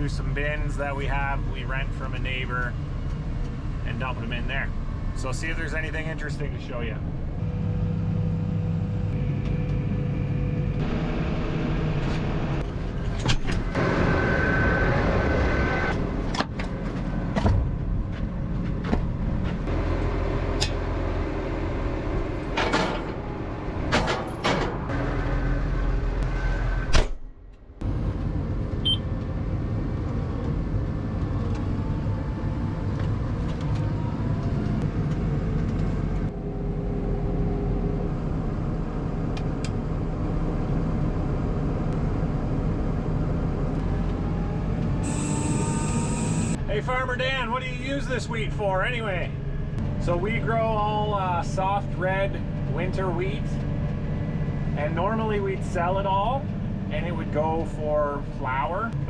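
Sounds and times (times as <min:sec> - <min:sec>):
tractor engine running: 0:16.0 - 0:59.0.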